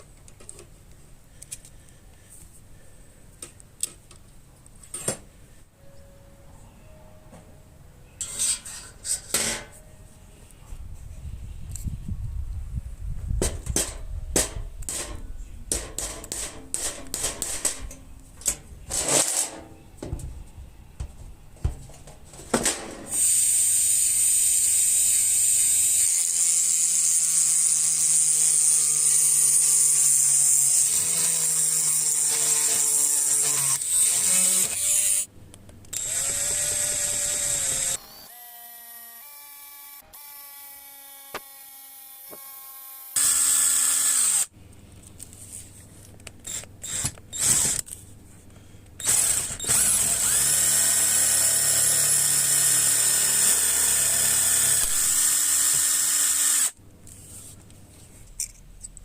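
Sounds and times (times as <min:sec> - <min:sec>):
power tool cutting sheet metal: 0:23.1 - 0:35.3, 0:36.0 - 0:44.5, 0:49.0 - 0:56.8.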